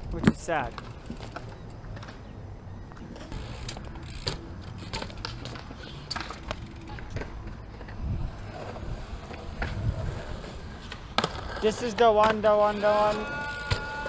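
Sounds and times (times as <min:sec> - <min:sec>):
bike clicks and knocks: 0:00.0 - 0:08.0, 0:10.8 - 0:14.0
bike tyres rolling on concrete: 0:00.0 - 0:14.0.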